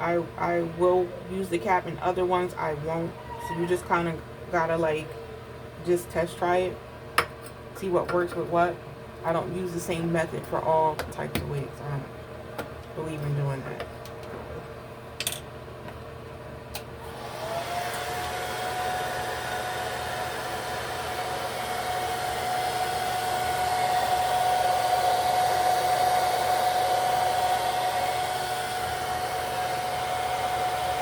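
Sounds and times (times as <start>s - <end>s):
hair dryer running: 17.0s - 31.0s.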